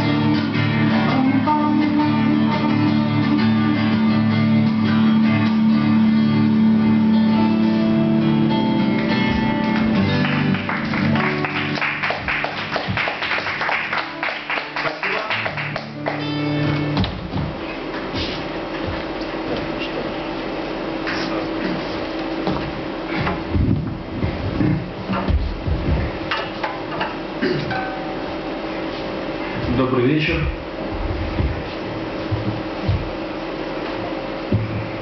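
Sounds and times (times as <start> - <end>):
acoustic guitars strumming chords: 0.0 - 29.7
audience applause: 8.9 - 16.4.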